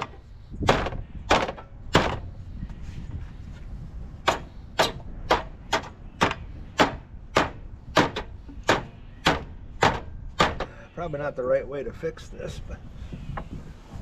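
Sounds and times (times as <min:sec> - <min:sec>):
hammer strikes: 0:04.2 - 0:10.7.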